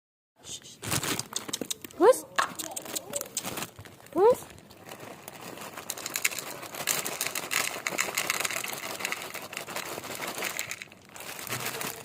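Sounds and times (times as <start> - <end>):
dry cat food clicking: 1.2 - 3.6, 5.8 - 11.0.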